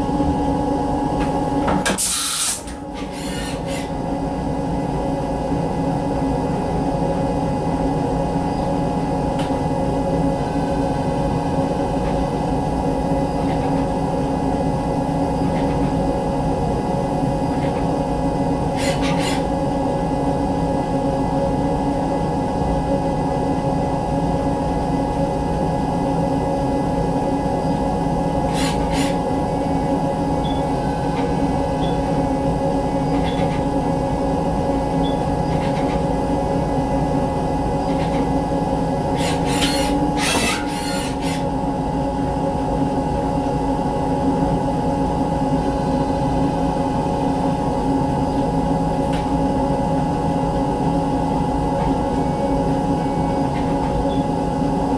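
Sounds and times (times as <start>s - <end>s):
milling machine humming: 27.2s - 54.9s.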